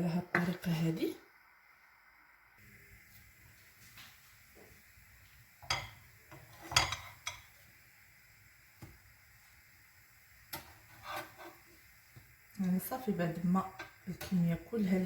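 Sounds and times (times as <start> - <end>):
utensils clattering on cookware: 5.6 - 7.5.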